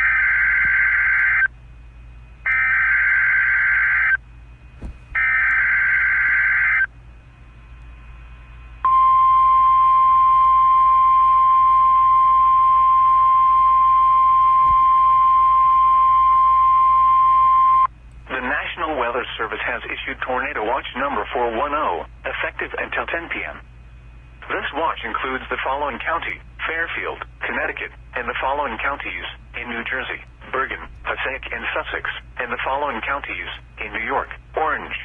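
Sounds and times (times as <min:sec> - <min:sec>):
steady alarm tone: 0:05.2 - 0:06.9.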